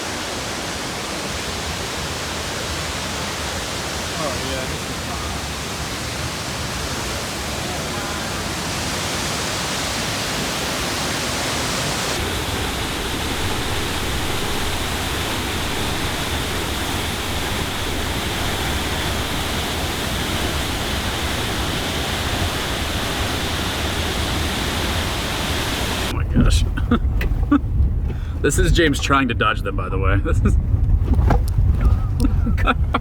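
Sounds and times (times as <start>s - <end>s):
waterfall rushing: 0.0s - 26.2s.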